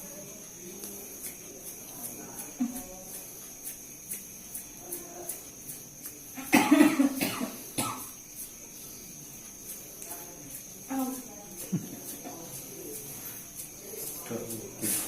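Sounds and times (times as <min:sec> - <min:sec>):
person coughing: 0:06.4 - 0:08.2.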